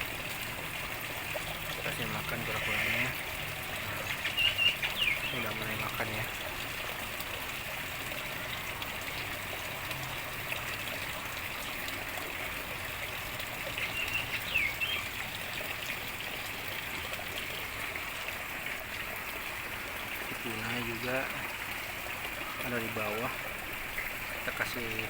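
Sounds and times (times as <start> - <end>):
water trickling: 0.0 - 25.0
high bird chirps: 4.1 - 5.4, 13.8 - 15.2.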